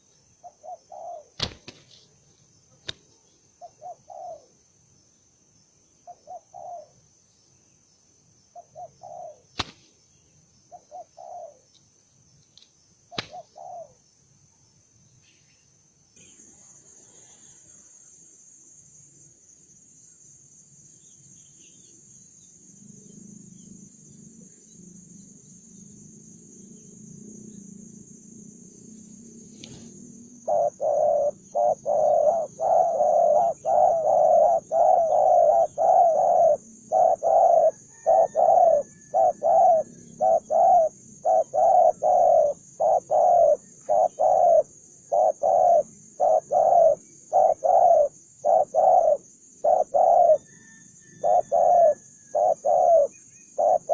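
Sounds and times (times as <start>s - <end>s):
dove cooing: 0.0s - 1.7s, 3.6s - 4.5s, 6.0s - 7.0s, 8.6s - 9.5s, 10.7s - 11.6s, 13.1s - 14.0s, 30.4s - 53.9s.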